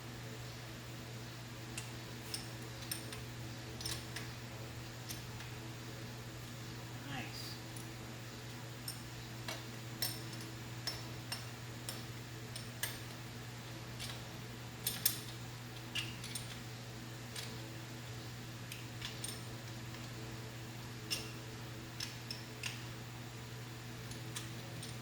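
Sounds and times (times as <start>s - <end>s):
metallic tool clicks and clinks: 3.8s - 4.2s.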